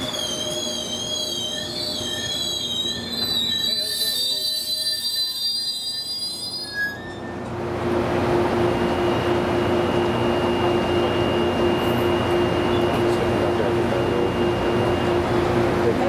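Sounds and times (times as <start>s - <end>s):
train wheels rumbling on rails: 0.0s - 4.6s, 7.2s - 16.0s
low train drone: 7.2s - 16.0s.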